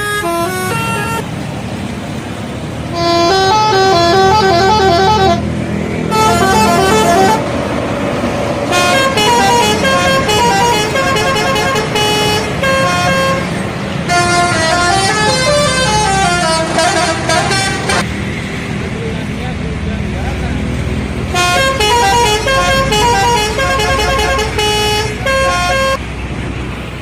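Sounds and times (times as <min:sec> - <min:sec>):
musical air horn tunes: 0:00.0 - 0:01.2, 0:02.9 - 0:05.5, 0:06.1 - 0:07.5, 0:08.7 - 0:13.5, 0:14.1 - 0:18.0, 0:21.3 - 0:26.0
bus engine running: 0:00.0 - 0:27.0.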